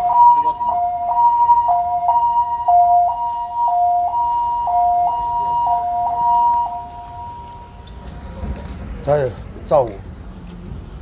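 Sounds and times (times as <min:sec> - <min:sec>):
two-tone emergency siren: 0:00.0 - 0:07.8.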